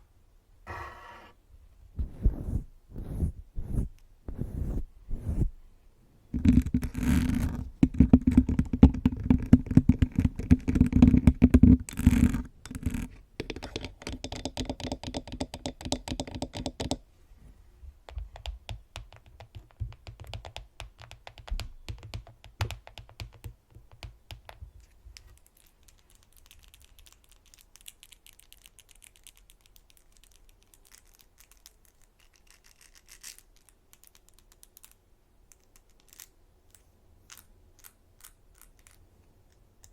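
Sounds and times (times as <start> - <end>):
fingernails scratching microphone: 2.0 - 5.5, 6.4 - 7.7
nail-on-nail tapping: 6.4 - 11.8, 12.7 - 17.0, 18.1 - 24.7.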